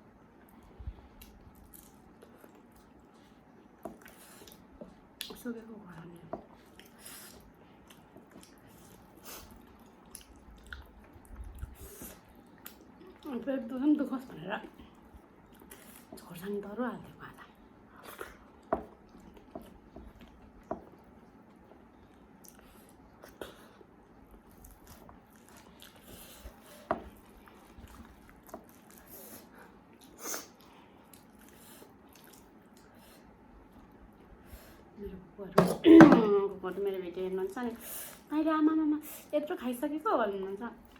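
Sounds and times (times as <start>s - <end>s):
person chewing food: 0.3s - 5.4s, 6.4s - 13.3s, 14.8s - 16.2s, 17.9s - 34.4s.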